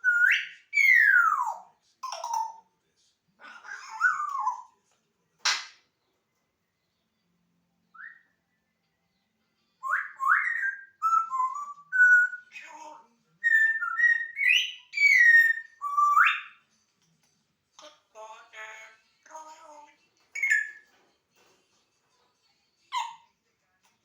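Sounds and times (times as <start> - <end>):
parrot whistling: 9.8 - 12.6, 13.5 - 16.6.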